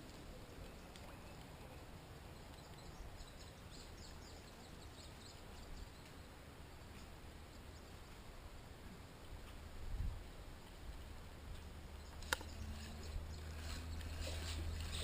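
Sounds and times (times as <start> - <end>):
faint outdoor background: 0.0 - 15.0
bird chirping: 0.4 - 6.3, 11.9 - 15.0.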